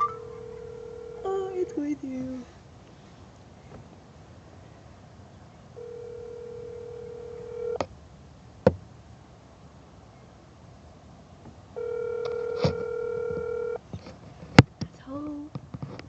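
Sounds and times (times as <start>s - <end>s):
telephone ringback tone: 0.0s - 1.8s, 5.8s - 7.8s, 11.8s - 13.8s.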